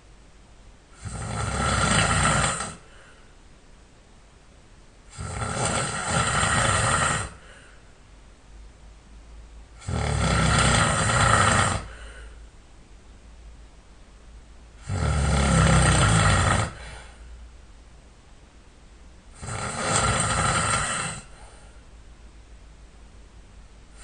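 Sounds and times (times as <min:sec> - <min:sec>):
man snoring loudly: 0:01.0 - 0:02.9, 0:05.1 - 0:07.6, 0:09.8 - 0:12.1, 0:14.8 - 0:17.0, 0:19.4 - 0:21.4.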